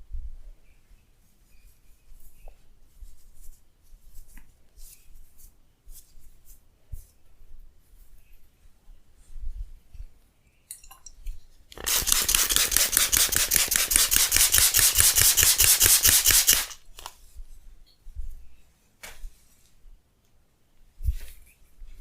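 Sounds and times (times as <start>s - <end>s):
hands rubbing head and hair: 0.9s - 8.6s, 11.8s - 18.3s, 21.0s - 22.0s.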